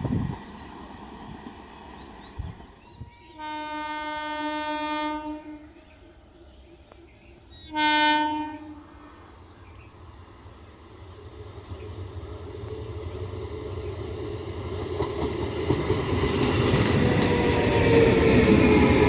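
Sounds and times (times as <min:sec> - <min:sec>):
locomotive horn blasts: 0:03.0 - 0:05.8, 0:07.6 - 0:08.8.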